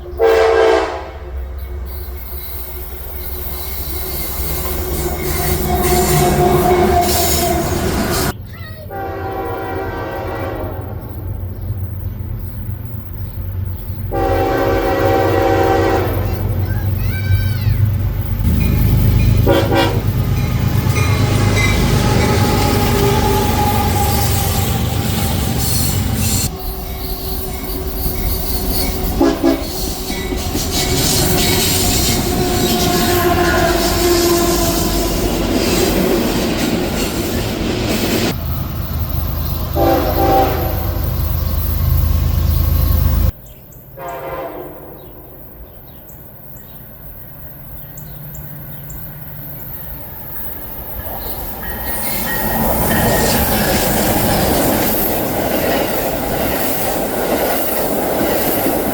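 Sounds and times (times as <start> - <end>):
train horn: 0.0 - 1.4, 4.6 - 8.3, 8.9 - 11.1, 14.1 - 16.6, 19.3 - 36.1, 39.7 - 41.1, 44.0 - 45.1
train rumble and wheel noise: 0.0 - 58.9.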